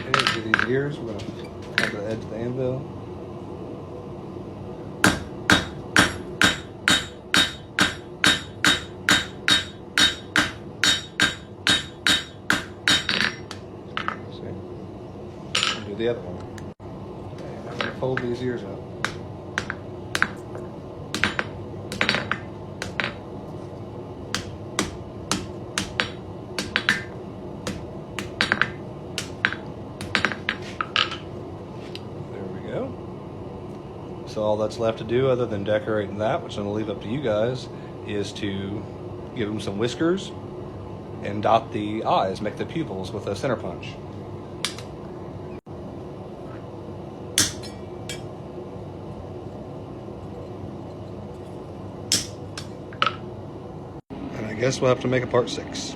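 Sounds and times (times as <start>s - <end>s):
hammer tapping on steel: 5.1s - 13.6s, 24.4s - 27.1s.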